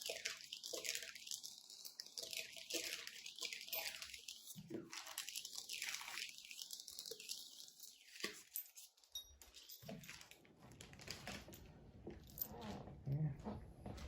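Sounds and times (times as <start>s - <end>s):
packaging rustling: 9.6s - 11.6s.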